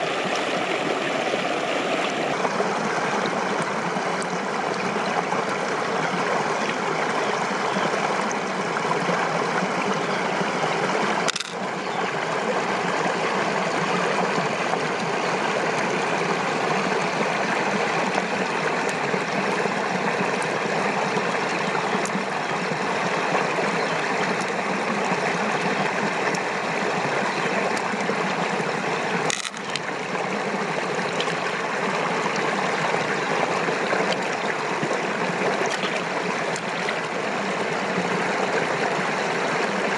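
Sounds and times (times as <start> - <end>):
flowing water rushing: 0.0 - 39.9.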